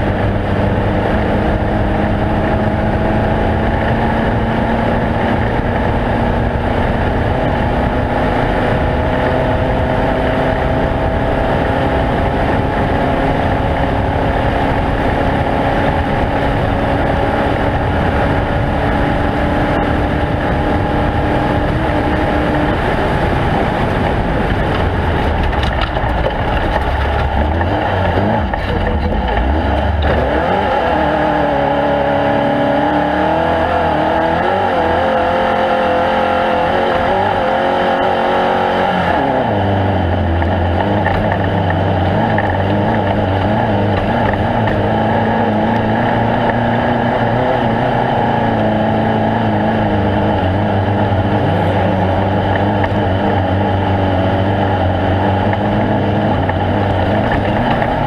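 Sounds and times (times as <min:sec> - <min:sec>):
low rumble: 0:00.0 - 0:34.9
vehicle engine running hard: 0:00.0 - 0:58.0
wind and road noise: 0:00.0 - 0:58.0.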